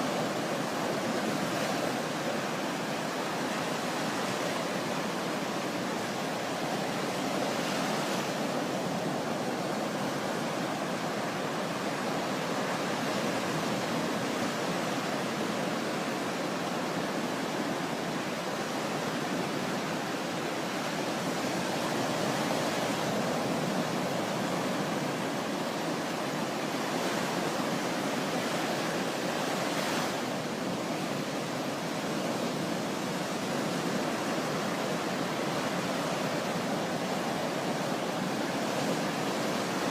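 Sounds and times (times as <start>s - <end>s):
sea waves washing on shore: 0.0s - 39.9s.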